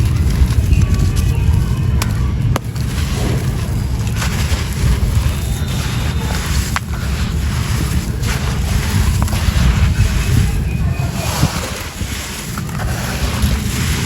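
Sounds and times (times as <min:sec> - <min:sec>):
sand-cement fizzing in water: 0:00.0 - 0:14.0
sharp crackles: 0:00.0 - 0:14.0.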